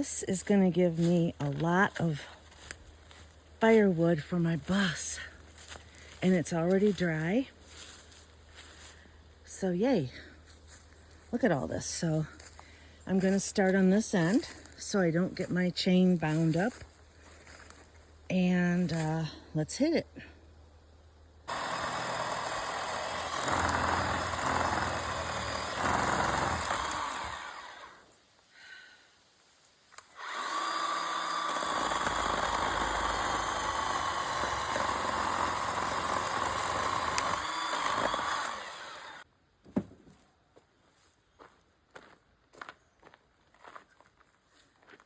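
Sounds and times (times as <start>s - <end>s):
chainsaw cutting log: 21.5s - 28.0s, 30.0s - 39.2s.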